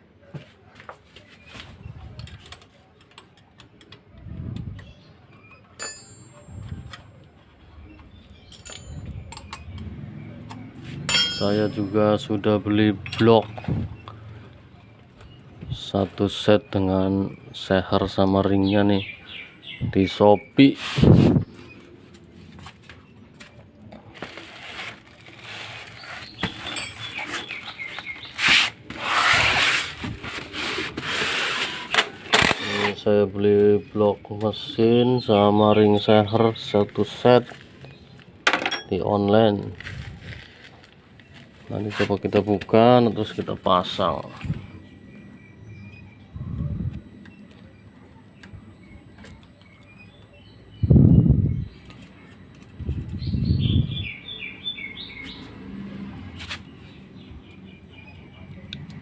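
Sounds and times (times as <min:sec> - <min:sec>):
metal tools clinking: 0:05.8 - 0:06.6, 0:08.5 - 0:09.7, 0:11.1 - 0:12.1, 0:26.4 - 0:27.6, 0:38.5 - 0:39.0
packaging rustling: 0:24.1 - 0:26.6, 0:39.7 - 0:41.6.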